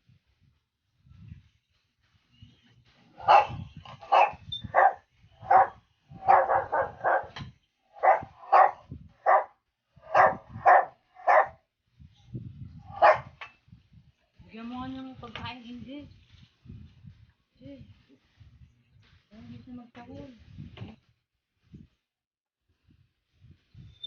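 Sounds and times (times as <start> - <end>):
dog barking: 3.2 - 7.4, 8.0 - 9.5, 10.1 - 11.6, 12.9 - 13.4.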